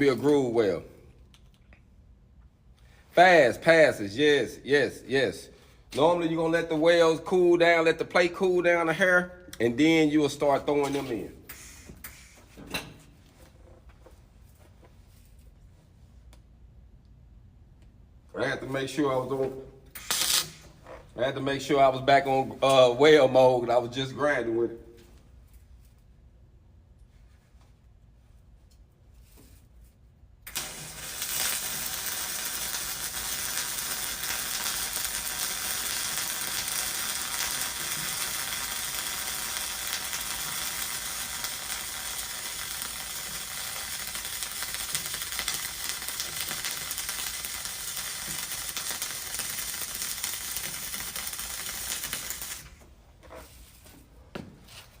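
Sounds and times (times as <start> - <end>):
welding arc burning: 19.9 - 20.8, 30.4 - 52.8.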